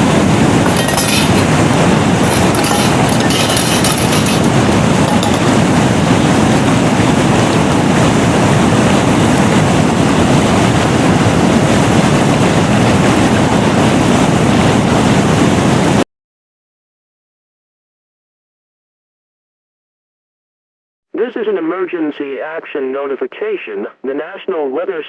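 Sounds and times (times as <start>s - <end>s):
tornado wind rushing: 0.0s - 16.0s.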